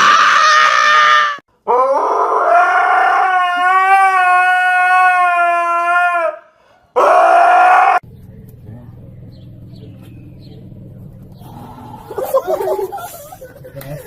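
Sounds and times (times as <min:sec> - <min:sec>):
dog howling: 0:07.0 - 0:08.0.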